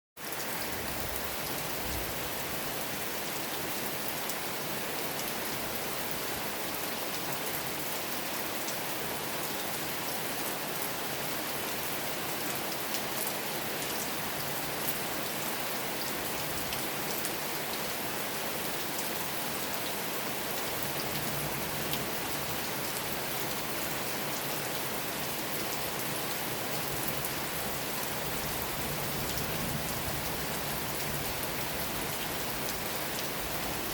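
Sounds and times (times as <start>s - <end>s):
rain pattering: 18.8s - 23.3s, 25.6s - 33.9s.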